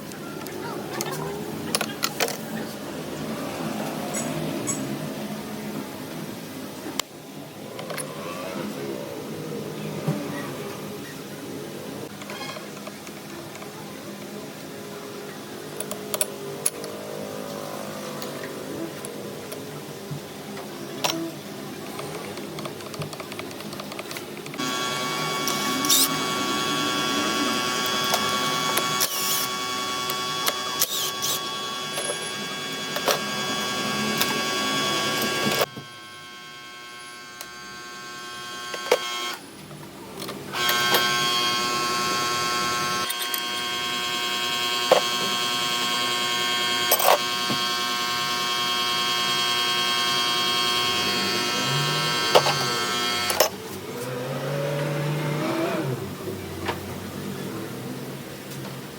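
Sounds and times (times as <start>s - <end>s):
small electric motor whining: 24.6s - 39.4s, 40.5s - 56.4s.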